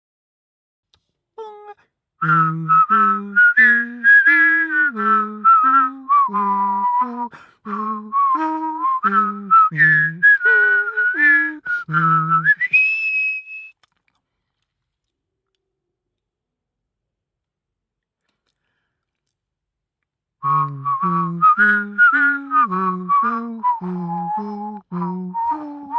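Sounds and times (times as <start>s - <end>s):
person voicing lower part: 1.4s - 12.8s, 20.4s - 25.9s
person whistling a chime melody: 2.2s - 13.8s, 20.4s - 25.9s.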